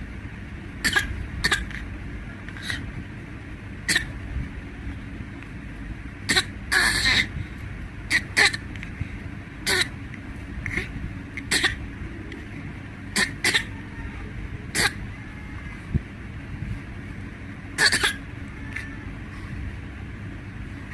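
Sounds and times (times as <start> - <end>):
small child coughing: 0.8 - 1.9, 2.6 - 2.9, 3.9 - 4.2, 6.3 - 7.3, 8.1 - 8.7, 9.6 - 10.0, 11.5 - 11.9, 13.1 - 14.0, 14.7 - 15.1, 17.8 - 18.3.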